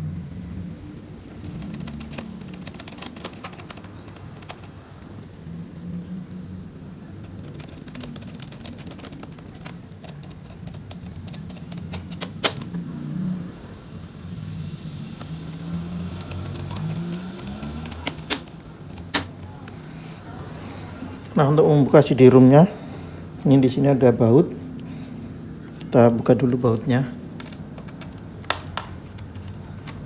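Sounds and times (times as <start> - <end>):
low vehicle engine rumble: 0.0 - 21.6
screwdriver clicking and tapping: 10.1 - 12.7, 16.2 - 19.5, 27.4 - 30.0.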